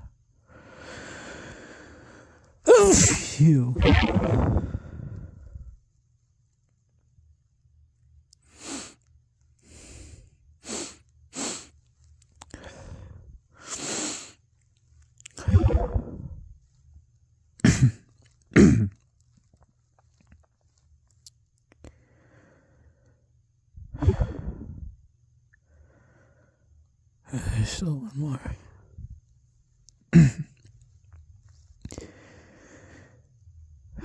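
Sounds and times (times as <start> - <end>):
person sneezing: 2.7 - 4.6, 17.7 - 18.0, 18.6 - 18.9, 30.2 - 30.5.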